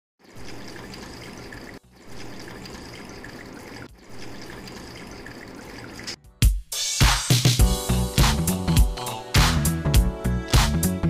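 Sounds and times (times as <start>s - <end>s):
fountain water trickling: 0.2s - 6.2s
music with loud beat: 6.4s - 11.0s.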